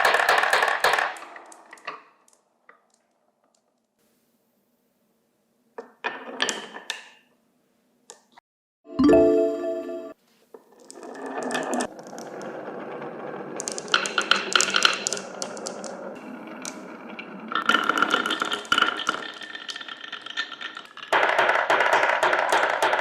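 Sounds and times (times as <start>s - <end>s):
marbles rolling on wooden tracks: 0.0s - 3.8s, 10.6s - 23.0s
marbles clicking and clattering: 13.6s - 16.0s.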